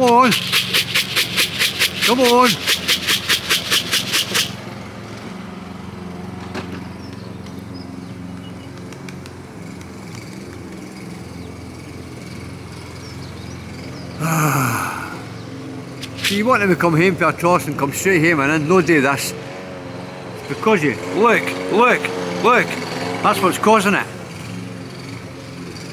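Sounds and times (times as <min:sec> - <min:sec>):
fast rhythmic rattle: 0:00.0 - 0:04.7, 0:16.0 - 0:17.1
lawnmower engine running: 0:00.0 - 0:14.2, 0:15.4 - 0:25.9.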